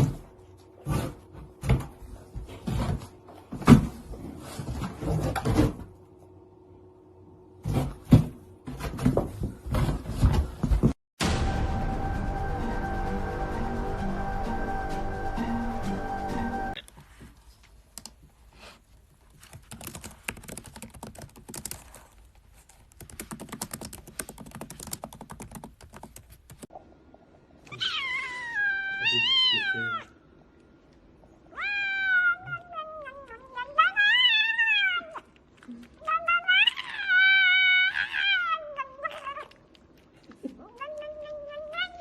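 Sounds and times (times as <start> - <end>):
rapid clicking and tapping: 19.4 - 22.0, 22.9 - 26.7
cat meowing: 27.7 - 30.2, 31.5 - 35.3, 36.0 - 39.6, 40.5 - 42.0.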